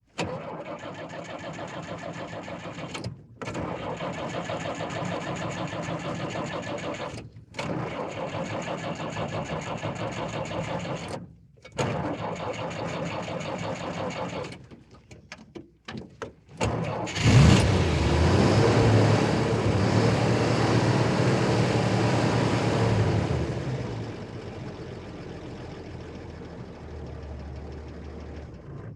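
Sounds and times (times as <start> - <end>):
truck starter cranking: 0.1 - 15.2, 16.3 - 18.3.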